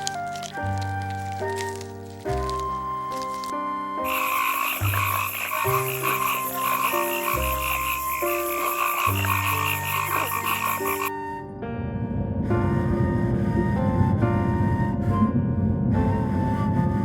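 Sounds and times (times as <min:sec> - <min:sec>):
frogs calling: 0:00.0 - 0:11.1
soft background music: 0:00.0 - 0:17.0.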